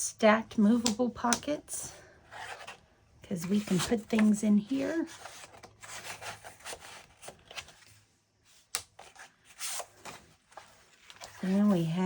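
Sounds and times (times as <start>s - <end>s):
paper rustling and sliding: 3.4s - 12.0s.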